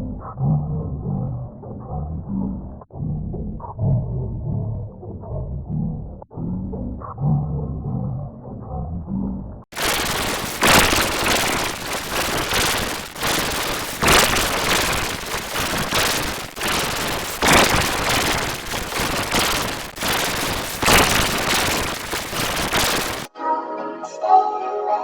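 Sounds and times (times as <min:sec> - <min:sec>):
distorted siren ringtone crackling: 0:09.8 - 0:23.3.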